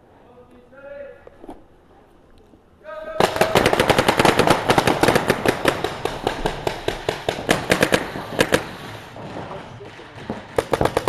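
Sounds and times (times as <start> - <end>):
paintball markers firing: 3.2 - 11.0.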